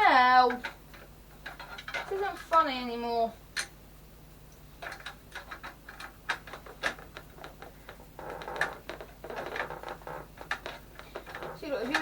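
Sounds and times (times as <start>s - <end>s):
clicks and taps on plastic: 4.8s - 12.0s
scratchy scraping: 5.4s - 12.0s.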